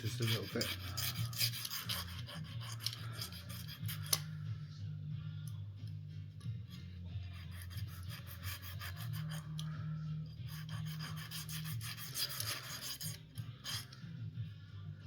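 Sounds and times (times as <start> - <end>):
file rasping on steel: 0.0 - 4.3, 6.7 - 9.7, 10.4 - 14.0.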